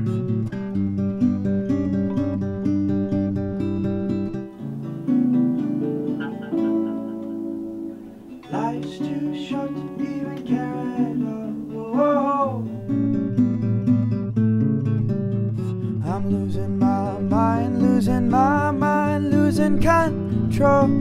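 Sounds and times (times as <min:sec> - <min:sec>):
acoustic guitar playing: 0:00.0 - 0:21.0
man singing: 0:08.4 - 0:12.8, 0:15.8 - 0:21.0.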